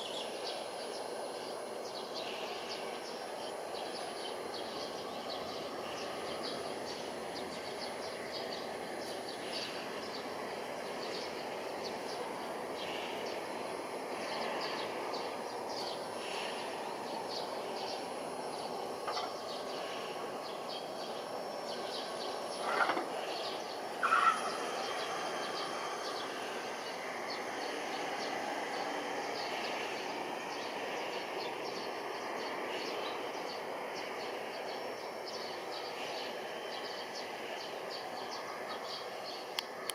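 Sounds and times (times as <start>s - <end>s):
distant city rumble: 0.0s - 39.9s
faint ticks: 39.6s - 39.9s.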